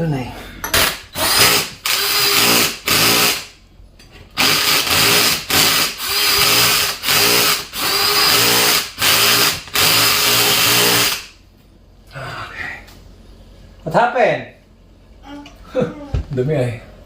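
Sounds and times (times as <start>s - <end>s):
electric drill boring into drywall: 0.8s - 3.5s, 4.4s - 11.3s.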